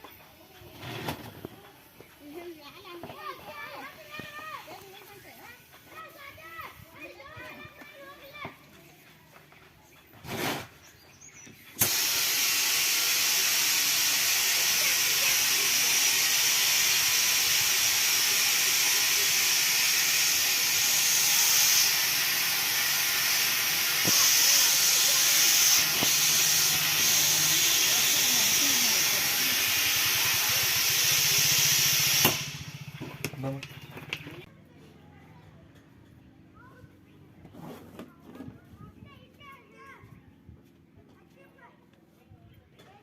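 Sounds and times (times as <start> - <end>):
compressed air hissing: 11.8 - 33.0.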